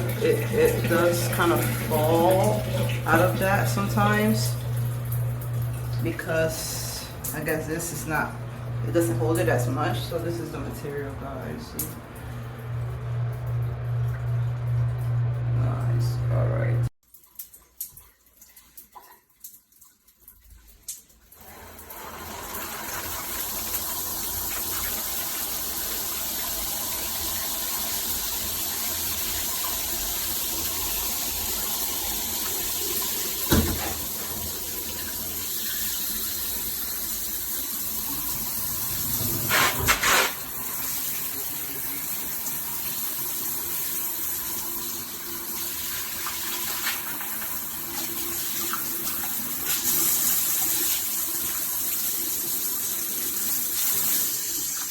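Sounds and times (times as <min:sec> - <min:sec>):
shower water spraying: 0:00.0 - 0:11.1, 0:20.8 - 0:54.9.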